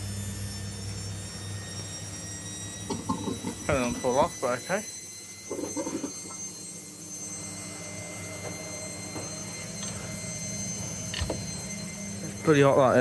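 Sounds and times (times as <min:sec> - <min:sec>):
low machine hum: 0:00.0 - 0:13.0
steady tones: 0:02.4 - 0:13.0.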